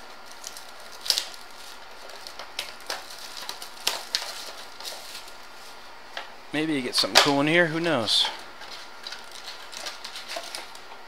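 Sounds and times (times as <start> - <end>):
sharp crackles: 0.0 - 5.8
wrapping crinkling and tearing: 0.0 - 5.9, 8.3 - 11.0.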